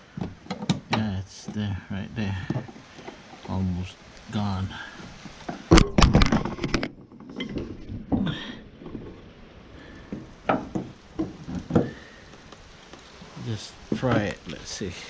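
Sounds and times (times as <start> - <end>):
clicks and knocks of prying fitting: 0.2 - 1.6.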